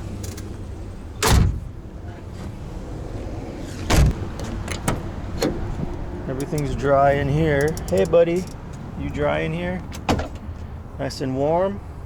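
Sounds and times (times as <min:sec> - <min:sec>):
van doors thumping: 0:01.2 - 0:01.8, 0:03.6 - 0:06.8, 0:09.8 - 0:10.7.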